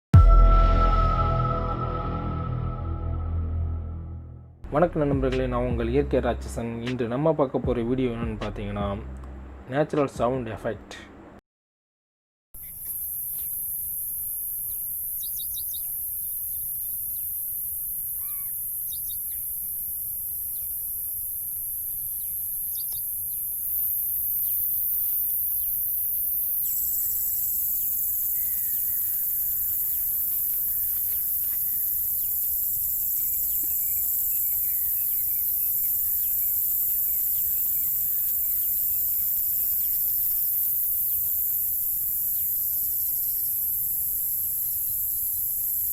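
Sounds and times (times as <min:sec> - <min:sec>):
high-pitched insect chorus: 0:12.6 - 0:45.9
low insect drone: 0:12.6 - 0:45.9
bird chirps: 0:15.2 - 0:15.9, 0:18.2 - 0:19.4.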